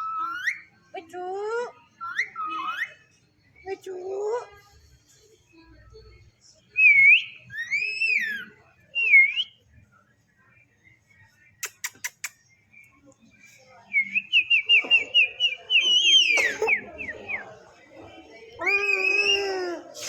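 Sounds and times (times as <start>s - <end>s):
whistling: 6.8s - 9.6s, 13.9s - 17.6s.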